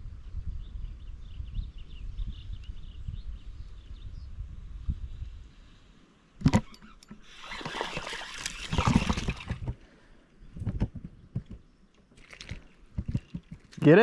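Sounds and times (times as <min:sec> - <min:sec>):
water splashing in a creek: 0:06.6 - 0:09.8.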